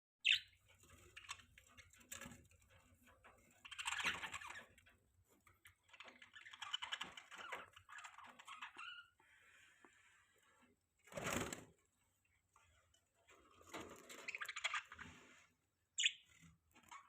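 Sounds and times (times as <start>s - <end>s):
budgies chattering: 0.2s - 0.6s, 16.0s - 16.3s.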